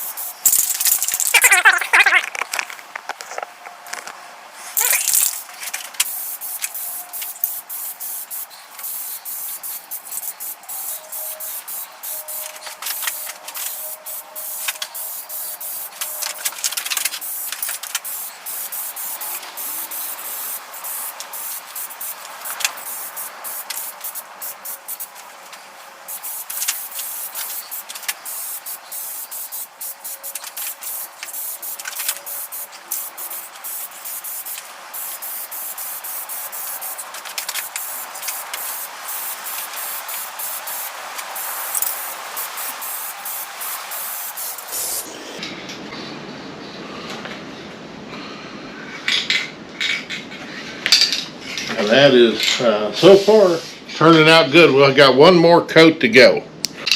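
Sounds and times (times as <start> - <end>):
spray paint hissing: 0.0 - 2.2, 4.7 - 45.4.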